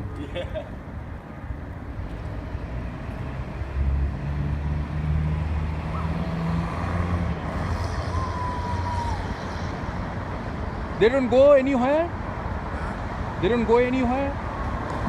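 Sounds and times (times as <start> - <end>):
traffic noise: 0.0 - 15.0
vehicle engine passing by: 2.2 - 10.5.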